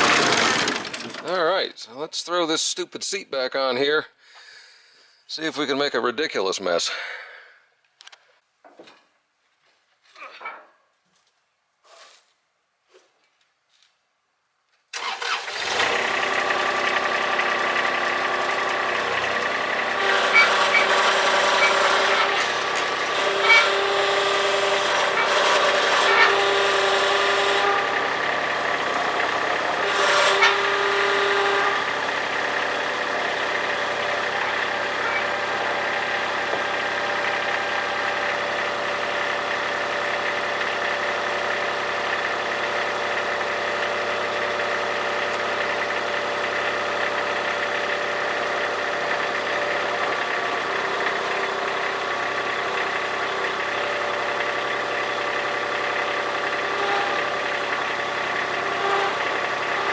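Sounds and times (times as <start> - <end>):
diesel engine running: 0.0 - 2.0, 15.0 - 59.9.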